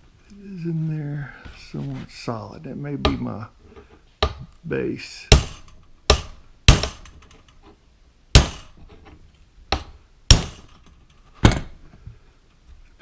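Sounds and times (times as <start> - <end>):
hammer striking steel punch: 5.3 - 7.1, 8.4 - 8.8, 9.7 - 10.7.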